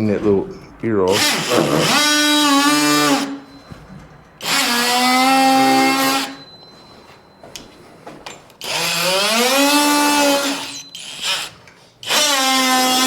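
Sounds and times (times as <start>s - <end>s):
oscillating multi-tool buzzing: 8.6s - 13.0s.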